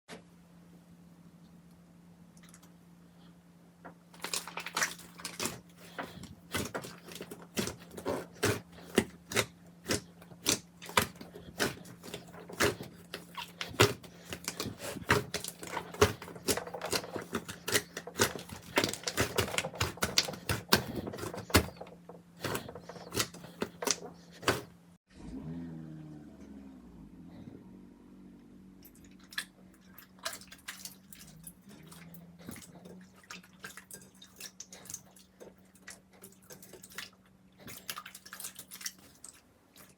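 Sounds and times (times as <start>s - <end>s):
faint steady hum: 0.1s - 25.4s.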